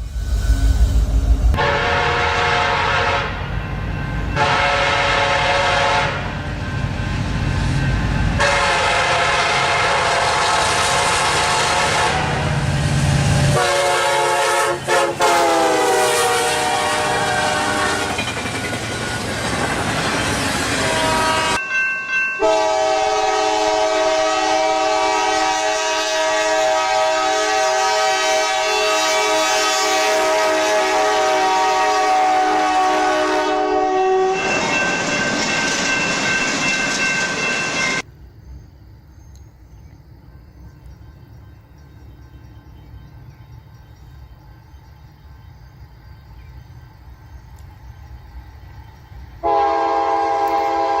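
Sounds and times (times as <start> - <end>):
train rumble: 0.0 - 51.0
locomotive air horn chords: 1.5 - 3.6, 4.4 - 6.4, 8.4 - 12.6, 13.5 - 18.2, 20.7 - 21.6, 22.4 - 34.6, 49.4 - 51.0.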